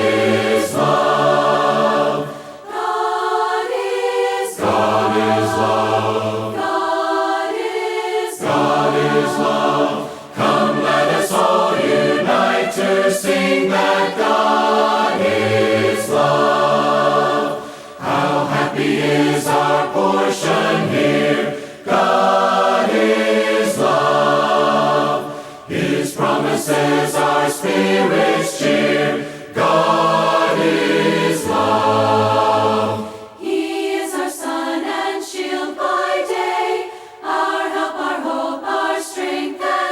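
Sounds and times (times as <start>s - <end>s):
choir singing a hymn: 0.0s - 39.9s.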